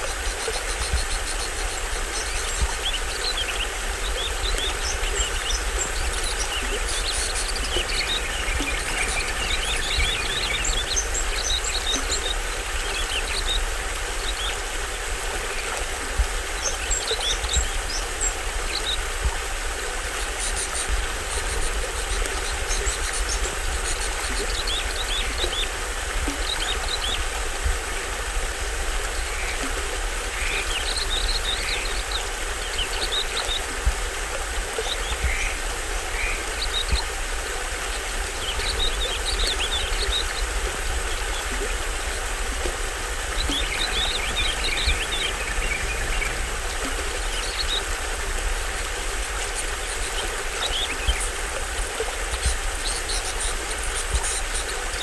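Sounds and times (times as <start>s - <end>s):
small waterfall rushing: 0.0s - 55.0s
birds chirping: 0.2s - 14.6s, 34.7s - 51.3s.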